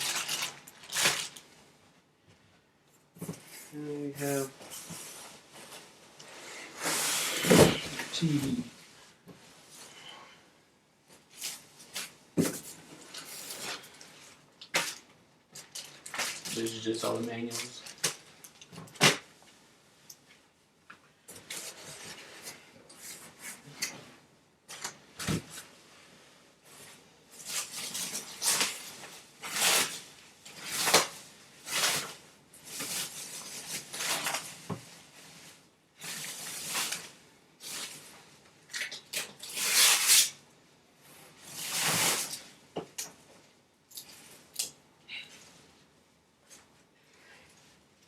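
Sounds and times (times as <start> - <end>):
packaging rustling and scraping: 0.0 - 1.4, 27.3 - 34.7.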